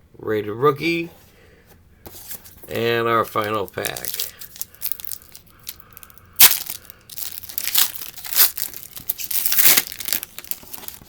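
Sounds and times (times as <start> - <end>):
wrapper crinkling: 3.3 - 11.0
wrapper ripping: 3.4 - 11.0.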